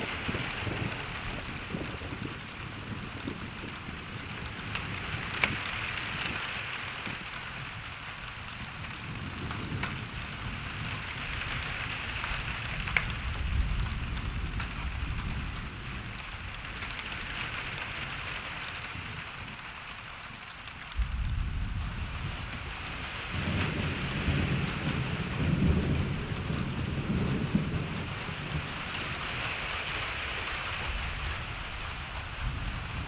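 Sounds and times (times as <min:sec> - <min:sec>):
distant thunder rumble: 0:00.0 - 0:18.1, 0:20.8 - 0:33.0
raindrops ticking close by: 0:00.0 - 0:33.0
rainfall hissing: 0:00.0 - 0:33.0.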